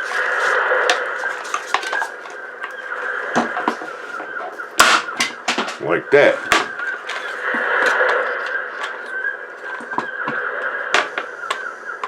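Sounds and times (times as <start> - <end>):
ice maker parts clinking and scraping: 0.0 - 11.6
steady background noise: 0.0 - 12.0.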